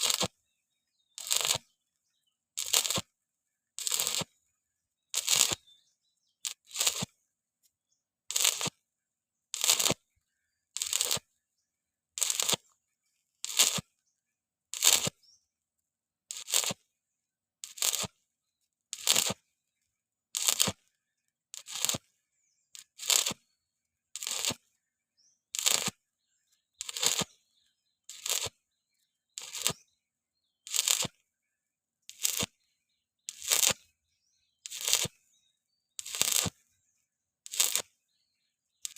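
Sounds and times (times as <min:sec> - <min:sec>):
electric arc welding crackle: 0:00.0 - 0:00.3, 0:01.2 - 0:01.6, 0:02.6 - 0:03.0, 0:03.8 - 0:04.3, 0:05.2 - 0:05.6, 0:06.4 - 0:07.1, 0:08.3 - 0:08.7, 0:09.5 - 0:10.0, 0:10.8 - 0:11.2, 0:12.2 - 0:12.6, 0:13.4 - 0:13.8, 0:14.8 - 0:15.1, 0:16.3 - 0:16.8, 0:17.6 - 0:18.1, 0:19.0 - 0:19.4, 0:20.4 - 0:20.8, 0:21.6 - 0:22.1, 0:22.8 - 0:23.4, 0:24.2 - 0:24.6, 0:25.6 - 0:26.0, 0:26.8 - 0:27.3, 0:28.1 - 0:28.6, 0:29.4 - 0:29.8, 0:30.7 - 0:31.2, 0:32.1 - 0:32.5, 0:33.3 - 0:33.8, 0:34.6 - 0:35.1, 0:36.0 - 0:36.6, 0:37.5 - 0:37.9.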